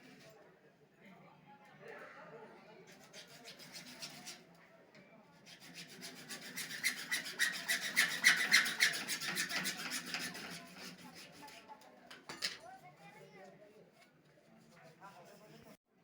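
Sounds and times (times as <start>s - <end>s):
hand tool rasping hard material: 5.5s - 11.6s.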